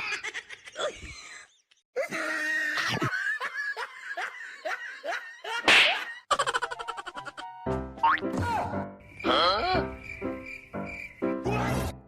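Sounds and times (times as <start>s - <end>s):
person laughing: 0.0s - 7.6s.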